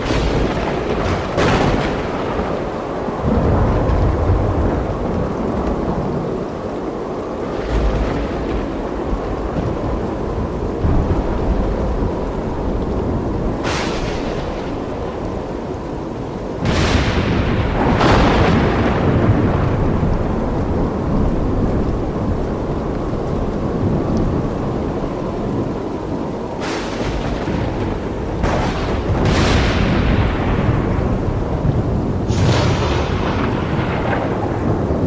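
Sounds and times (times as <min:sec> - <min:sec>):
steady rain: 0:00.0 - 0:35.0
thunder cracks and rumbles: 0:00.0 - 0:35.0.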